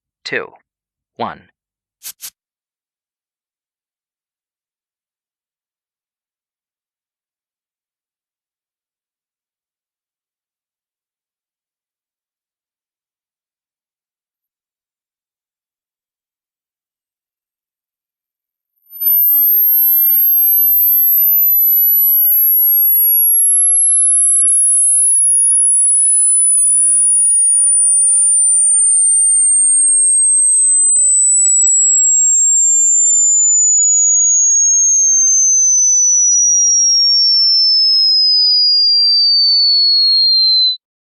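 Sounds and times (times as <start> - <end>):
sine tone sweeping downward: 18.7 - 40.8.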